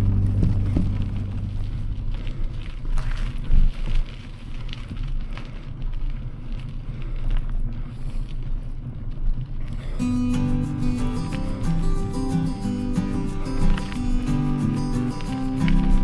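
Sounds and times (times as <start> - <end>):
wind buffeting microphone: 0.0 - 6.4
bicycle tyres crunching on gravel: 0.0 - 9.6.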